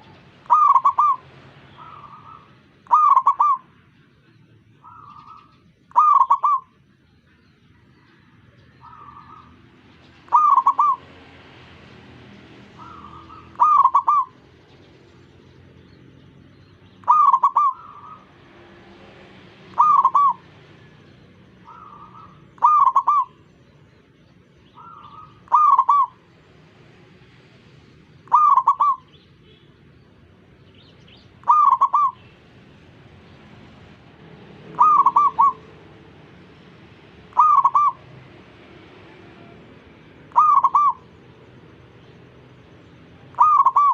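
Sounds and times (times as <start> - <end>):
faint dove soft coos: 0.0 - 1.2, 1.8 - 3.7, 4.8 - 6.8, 10.3 - 11.1, 12.8 - 14.3, 19.7 - 20.5, 21.6 - 23.4, 28.2 - 29.1, 31.4 - 32.2, 34.8 - 35.7, 37.3 - 38.1, 40.3 - 41.2, 43.3 - 43.9
dove cooing loudly: 0.0 - 3.8, 4.8 - 6.8, 8.8 - 9.6, 10.3 - 11.2, 12.6 - 14.4, 17.0 - 18.4, 19.6 - 20.9, 21.6 - 23.5, 24.8 - 26.3, 28.2 - 29.2, 31.4 - 32.3, 34.6 - 41.3, 43.3 - 43.9.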